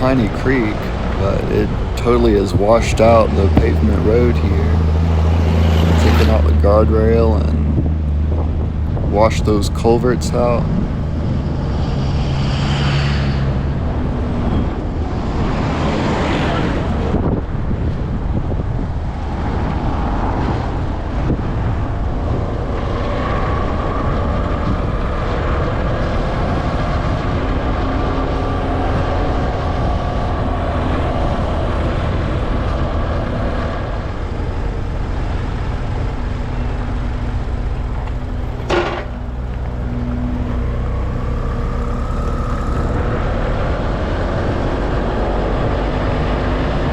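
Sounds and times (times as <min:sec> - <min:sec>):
faint whine: 0:00.0 - 0:15.5
vehicle engine and road rumble: 0:00.0 - 0:46.9.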